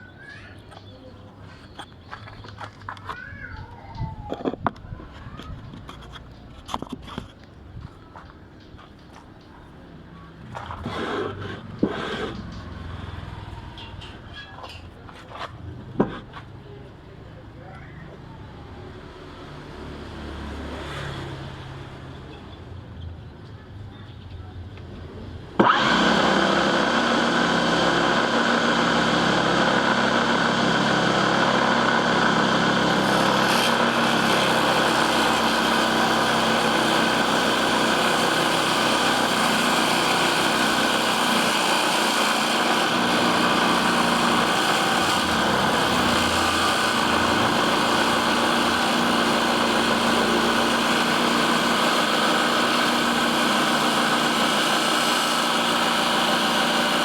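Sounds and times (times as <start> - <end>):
table saw motor whine: 25.6 - 57.0.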